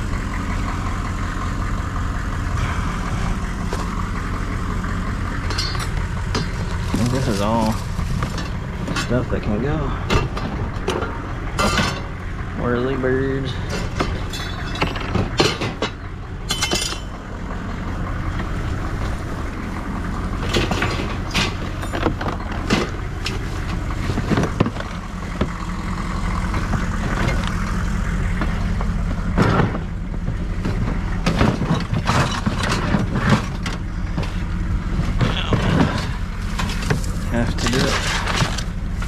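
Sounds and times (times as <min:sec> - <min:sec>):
truck engine idling: 0:00.0 - 0:39.0
scrap metal clanking: 0:05.3 - 0:12.3, 0:13.5 - 0:17.3, 0:20.2 - 0:25.6, 0:28.4 - 0:39.0.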